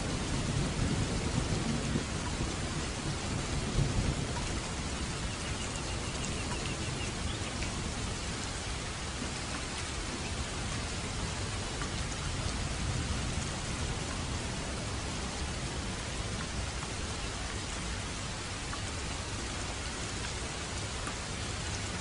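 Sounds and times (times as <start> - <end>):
thunder rumble: 0.0 - 8.1
steady rain: 0.0 - 22.0.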